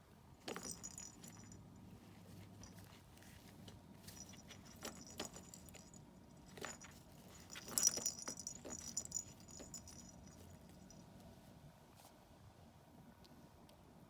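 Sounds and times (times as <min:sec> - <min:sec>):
toys knocking and rattling: 0:00.4 - 0:01.6, 0:04.1 - 0:10.9
bright jingling: 0:00.5 - 0:02.0, 0:04.0 - 0:11.1.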